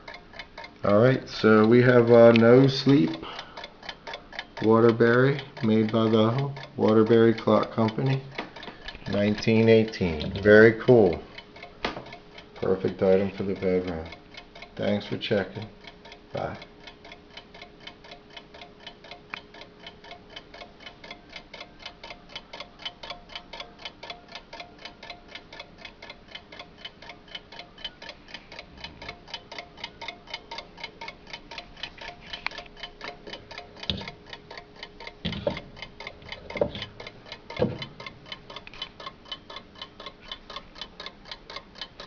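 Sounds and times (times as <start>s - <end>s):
alarm clock ticking: 0.0s - 42.0s.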